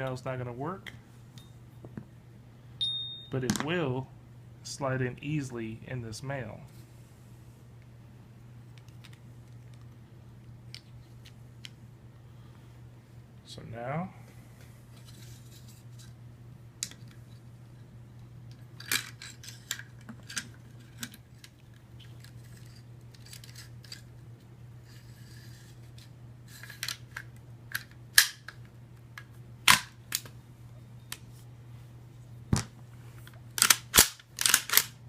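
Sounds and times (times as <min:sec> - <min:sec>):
faint low hum: 0:00.0 - 0:35.0
metal gun parts clicking: 0:33.6 - 0:35.0.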